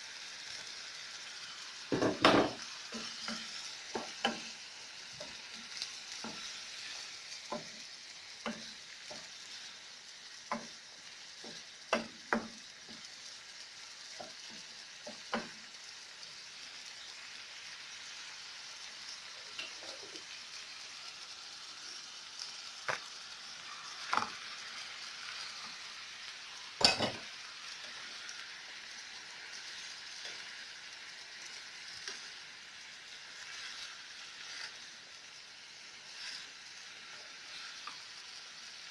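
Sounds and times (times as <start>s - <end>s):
food sizzling in a pan: 0.0s - 38.9s.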